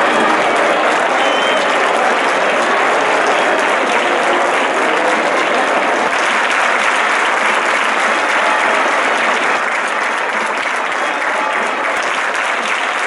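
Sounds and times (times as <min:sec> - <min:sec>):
crowd applauding: 0:00.0 - 0:13.0.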